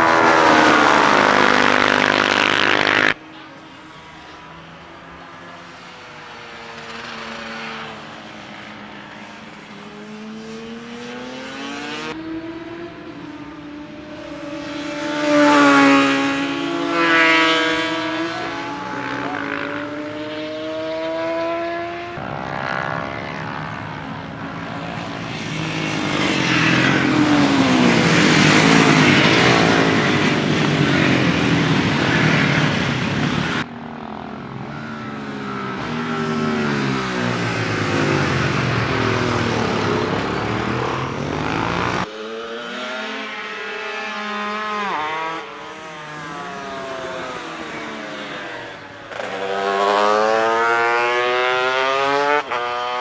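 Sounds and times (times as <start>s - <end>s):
racing motorcycles passing at speed: 0.0s - 53.0s.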